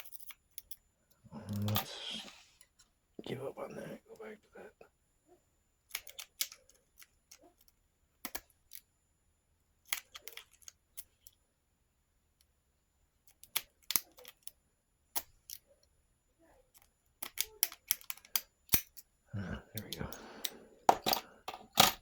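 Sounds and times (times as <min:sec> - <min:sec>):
lock-picking tools clicking on lock: 0:05.9 - 0:08.9, 0:09.8 - 0:11.4, 0:13.2 - 0:15.6, 0:16.7 - 0:19.1, 0:19.8 - 0:22.0.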